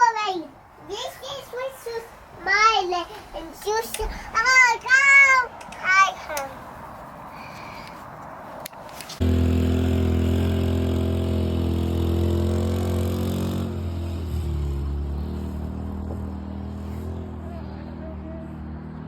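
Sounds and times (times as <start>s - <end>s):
quad bike engine idling: 9.2s - 18.7s.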